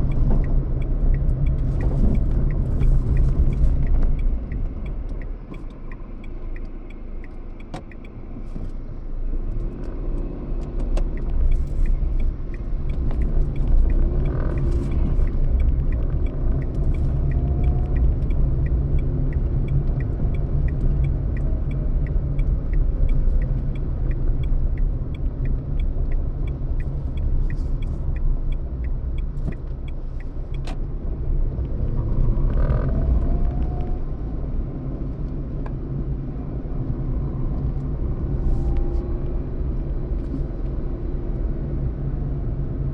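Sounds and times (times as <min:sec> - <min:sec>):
faint regular ticking: 0:00.0 - 0:34.0
vehicle engine and road noise: 0:00.0 - 0:42.9.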